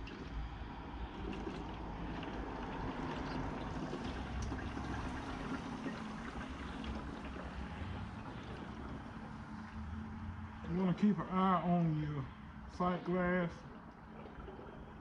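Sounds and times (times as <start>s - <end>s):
oil pouring into a container: 0.0s - 9.8s.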